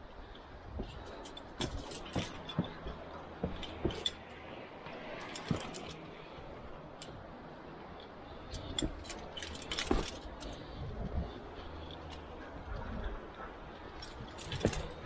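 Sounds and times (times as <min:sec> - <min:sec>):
small metal items clinking: 0:08.6 - 0:10.6.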